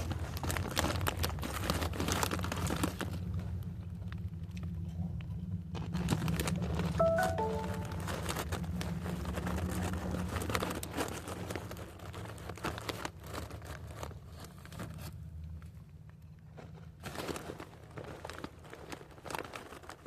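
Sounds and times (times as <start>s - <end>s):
chip bag crinkling: 0.0s - 3.5s, 5.8s - 15.3s, 17.0s - 20.0s.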